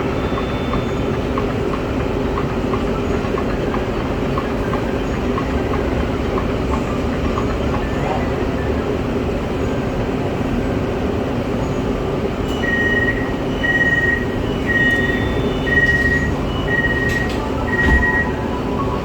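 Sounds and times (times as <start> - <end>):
train rumble and hum: 0.0 - 19.0
door warning beeps: 0.1 - 1.1, 12.4 - 18.6
doors shutting knock: 14.2 - 18.4.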